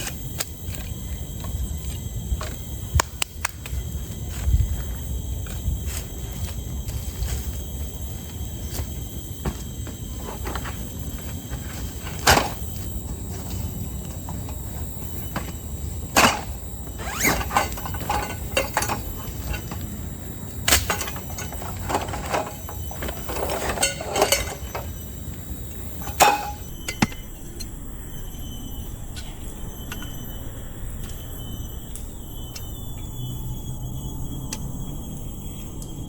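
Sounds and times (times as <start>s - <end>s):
faint high tones: 21.1s - 36.0s.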